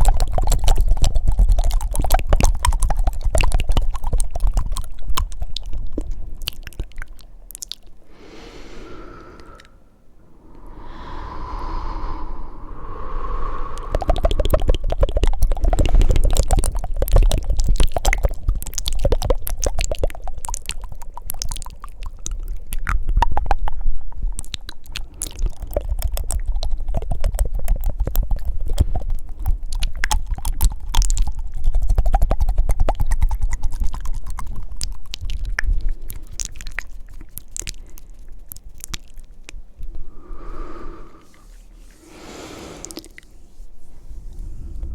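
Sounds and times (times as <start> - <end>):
wet tongue flutters and clicks: 0.0 - 9.8, 13.2 - 41.3, 42.8 - 43.4
breathy puffs: 7.9 - 16.8, 39.9 - 44.9.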